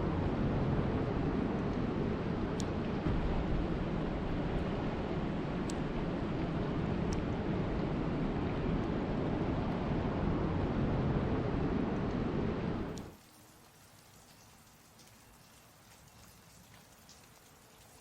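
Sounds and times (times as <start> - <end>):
sharp raindrop ticks: 12.9 - 18.0.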